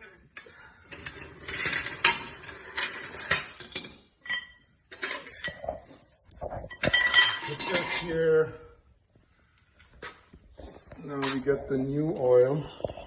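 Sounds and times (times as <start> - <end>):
metal tools knocking and clinking: 3.2 - 5.7, 6.6 - 8.2.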